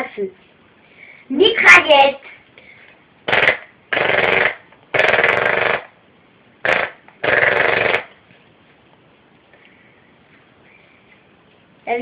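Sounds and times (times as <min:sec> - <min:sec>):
mouth imitating gunfire: 0:03.3 - 0:05.9.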